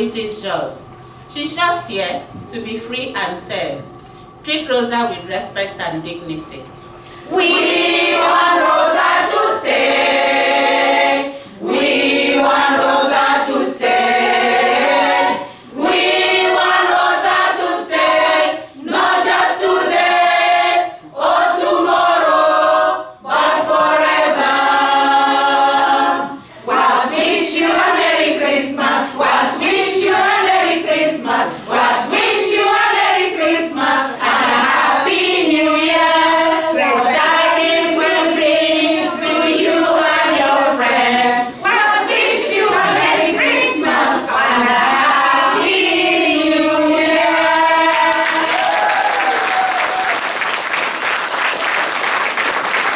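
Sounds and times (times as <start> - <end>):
women's choir singing: 7.2 - 50.2
singers breathing: 11.3 - 11.6.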